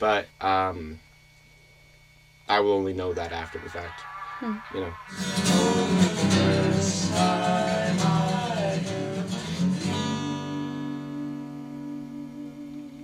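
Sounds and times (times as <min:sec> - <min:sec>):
person singing: 0:03.8 - 0:13.0
acoustic guitar strumming: 0:05.0 - 0:13.0.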